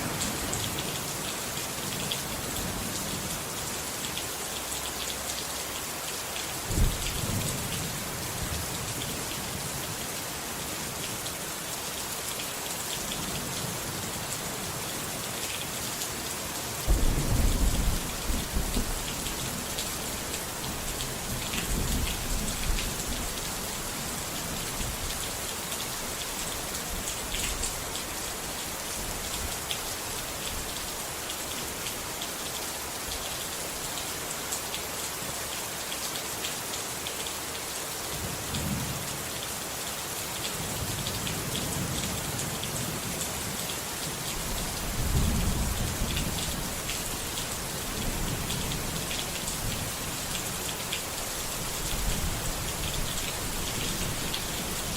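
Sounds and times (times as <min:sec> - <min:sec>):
heavy rain: 0:00.0 - 0:54.9
thunder rumbling: 0:16.9 - 0:19.6.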